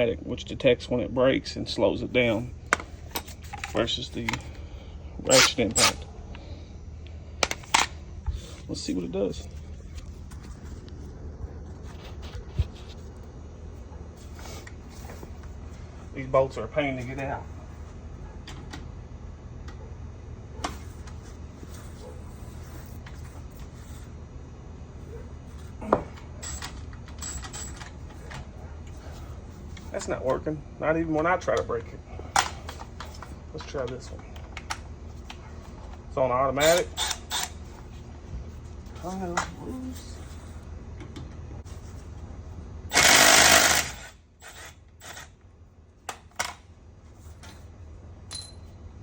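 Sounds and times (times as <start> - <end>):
cordless ratchet whirring: 36.6 - 37.6, 42.9 - 45.3.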